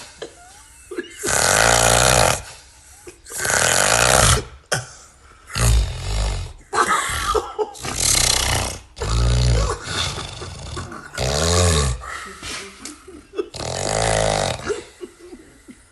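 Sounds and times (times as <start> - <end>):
man snoring loudly: 1.2 - 2.6, 3.3 - 4.6, 5.5 - 6.6, 7.8 - 12.2, 13.5 - 15.0.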